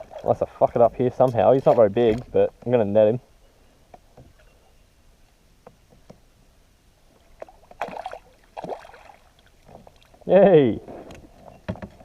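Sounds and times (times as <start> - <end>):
water splashing: 0.0 - 0.7, 7.1 - 10.3.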